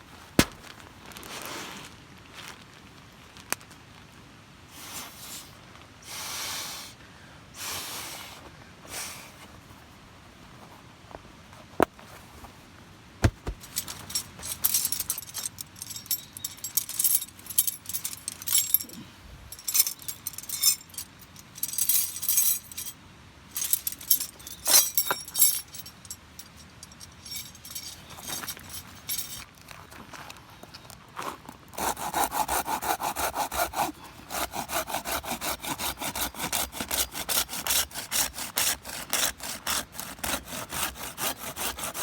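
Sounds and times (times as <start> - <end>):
sharp knocks: 13.2 - 13.9
small metal objects clinking: 13.6 - 29.5.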